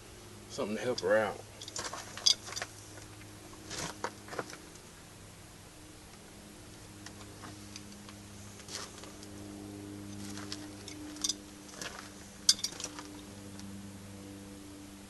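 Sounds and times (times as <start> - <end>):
low electrical hum: 0.0 - 15.0.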